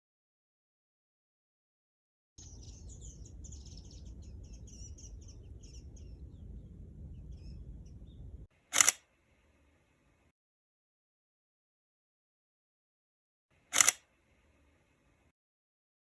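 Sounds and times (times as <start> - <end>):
low steady rumble: 2.4 - 8.5
small birds chirping: 2.4 - 8.5.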